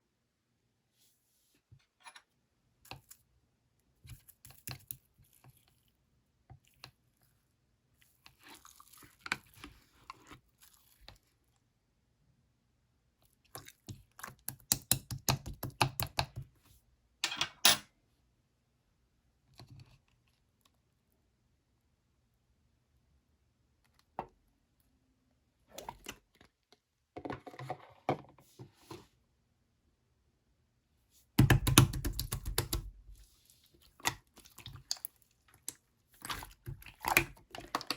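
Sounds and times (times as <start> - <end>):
slime squishing and clicking: 34.0 - 37.9.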